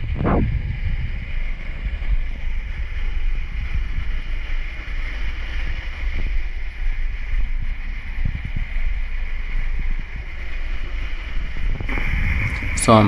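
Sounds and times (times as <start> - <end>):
wind buffeting microphone: 0.0 - 13.0
waterfall rushing: 11.9 - 13.0.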